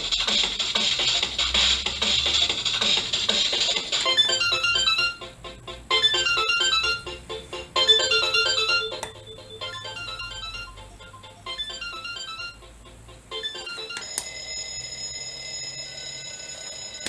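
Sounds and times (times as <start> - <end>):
alarm clock electronic melody: 3.4 - 17.0.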